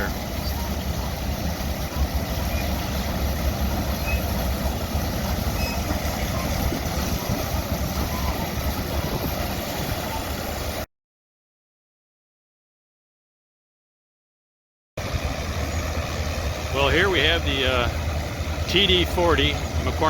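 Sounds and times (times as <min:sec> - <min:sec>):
crawler tractor engine running: 0:00.0 - 0:10.7, 0:15.0 - 0:20.0.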